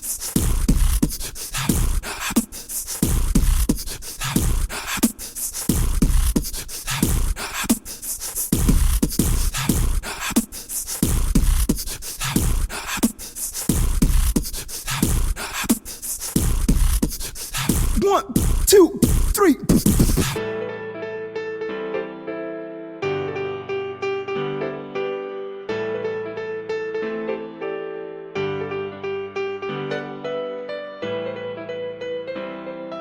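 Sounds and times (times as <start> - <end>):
intro music with driving beat: 5.5 - 7.4, 8.3 - 10.4, 16.3 - 20.4.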